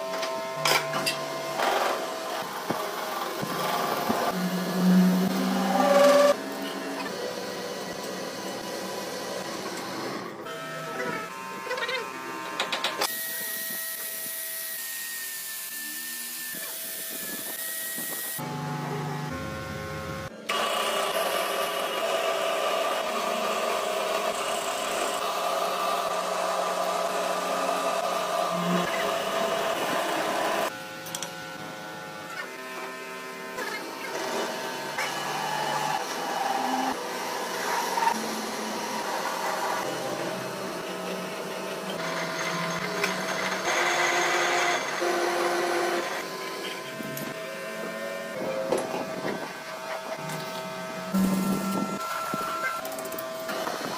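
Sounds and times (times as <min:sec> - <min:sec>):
workshop machine whining drone: 0:00.0 - 0:53.9.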